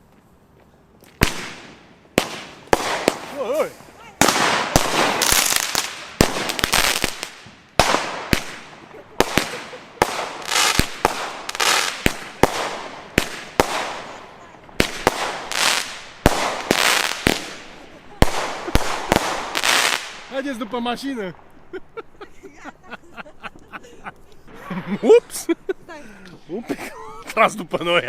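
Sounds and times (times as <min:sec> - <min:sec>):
fireworks hissing and crackling: 0:01.0 - 0:26.0
fireworks bangs: 0:01.2 - 0:22.2.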